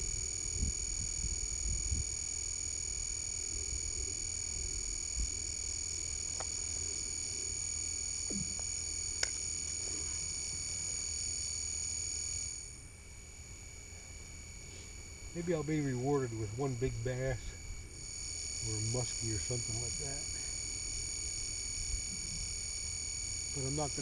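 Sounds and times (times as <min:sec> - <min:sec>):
high-pitched whine: 0:00.0 - 0:24.0.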